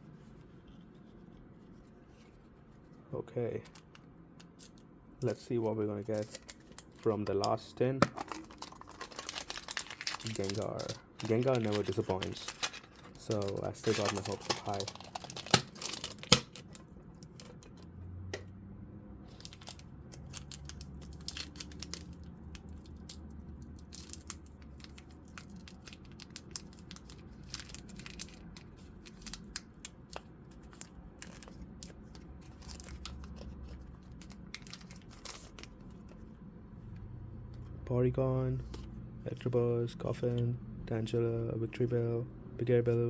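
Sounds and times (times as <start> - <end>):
foil wrapper crinkling and tearing: 6.0 - 7.0, 8.2 - 17.4, 19.3 - 35.9.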